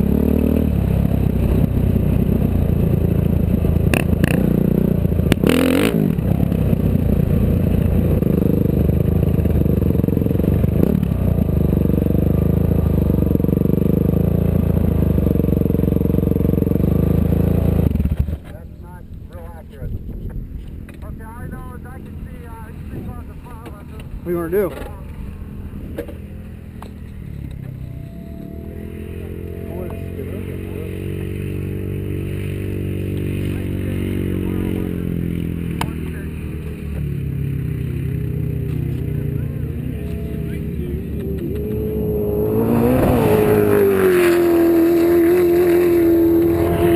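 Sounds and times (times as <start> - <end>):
vehicle engine droning: 0.0 - 46.9
engine sweeping past: 21.4 - 46.9.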